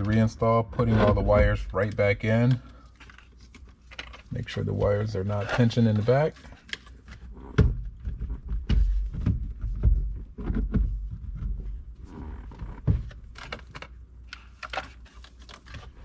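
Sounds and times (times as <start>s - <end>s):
plastic and wires rustling: 0.0s - 7.3s, 12.9s - 16.0s.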